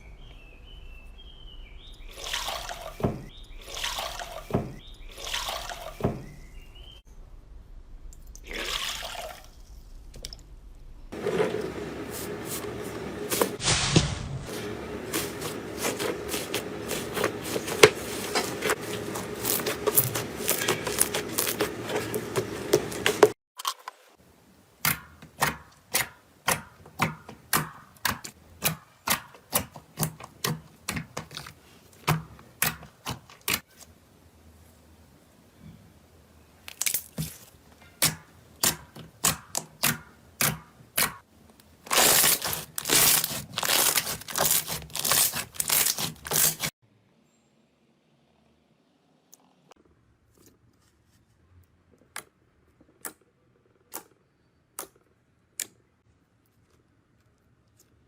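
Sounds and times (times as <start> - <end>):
slime crackling and popping: 41.9 - 46.7.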